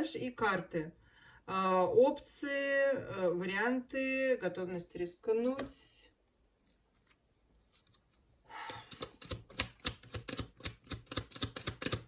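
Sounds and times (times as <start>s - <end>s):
cards being shuffled: 6.6s - 12.0s.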